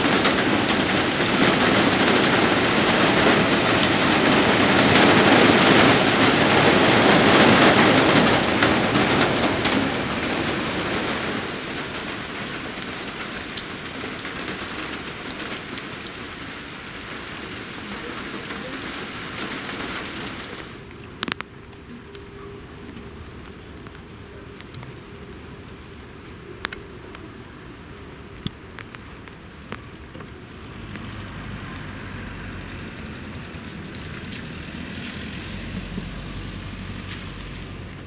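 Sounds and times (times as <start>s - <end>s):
single raindrops ticking: 0.0s - 25.0s, 26.6s - 27.3s, 28.3s - 31.9s
rain shower: 0.0s - 38.0s.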